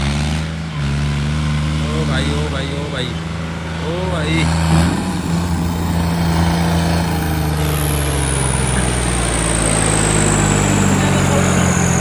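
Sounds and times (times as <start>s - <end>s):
tractor and car engines running: 0.0s - 12.0s
rushing noise: 3.6s - 12.0s
thin high whine: 3.8s - 12.0s.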